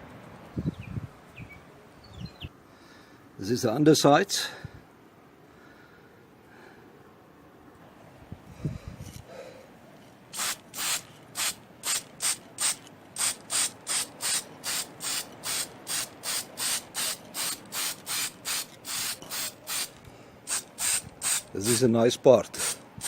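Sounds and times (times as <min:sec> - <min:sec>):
aerosol spray can hissing: 0:10.4 - 0:21.9, 0:22.6 - 0:23.0.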